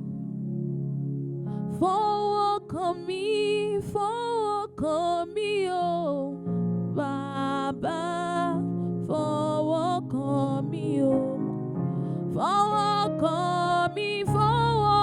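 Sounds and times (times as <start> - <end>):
soft keyboard chords: 0.0 - 15.0
person singing: 7.0 - 11.6, 12.3 - 15.0.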